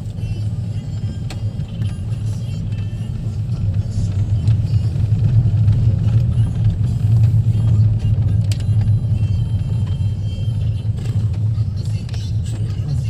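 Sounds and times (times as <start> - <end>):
car engine and tyres rumbling: 0.0 - 13.0.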